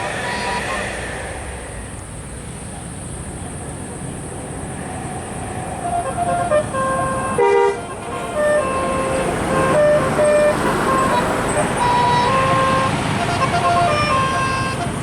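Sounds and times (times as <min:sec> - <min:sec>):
musical air horn playing a tune: 0:05.8 - 0:15.0.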